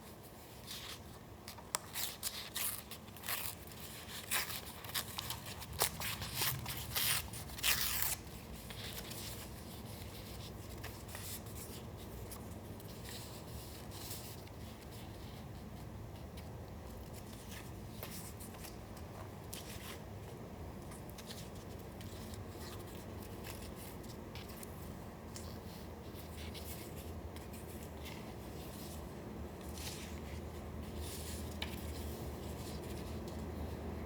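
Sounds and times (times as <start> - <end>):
paper rustling and scraping: 0.3 - 15.8, 20.9 - 33.8.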